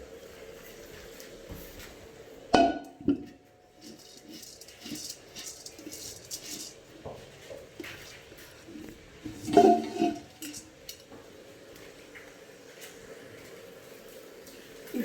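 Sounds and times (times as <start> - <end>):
metal pot clanging: 2.5 - 11.1.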